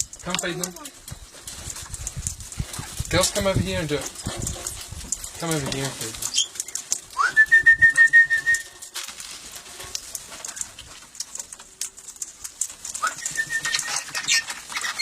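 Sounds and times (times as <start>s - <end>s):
light clicks and taps: 0.0s - 15.0s
high whistled call: 6.3s - 8.9s, 13.0s - 14.4s.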